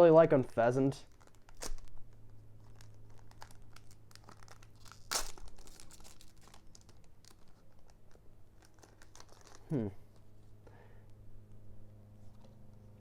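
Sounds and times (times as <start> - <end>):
foil wrapper crinkling and tearing: 0.9 - 10.4.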